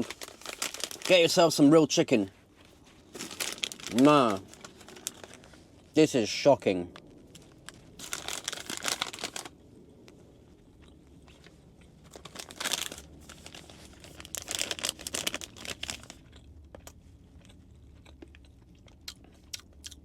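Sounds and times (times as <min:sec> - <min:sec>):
snack packaging crinkling: 0:00.0 - 0:01.6, 0:03.0 - 0:05.6, 0:06.9 - 0:09.5, 0:10.8 - 0:20.0.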